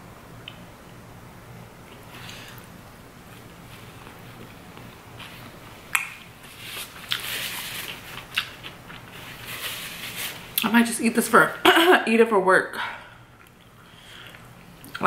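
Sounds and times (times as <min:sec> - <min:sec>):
crackly chewing: 0:03.3 - 0:09.3.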